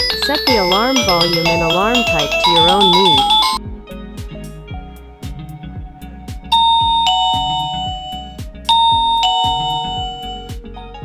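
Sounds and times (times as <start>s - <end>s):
two-note ding-dong chime: 0.0s - 3.6s, 6.6s - 10.6s
background music with steady beat: 0.0s - 11.0s.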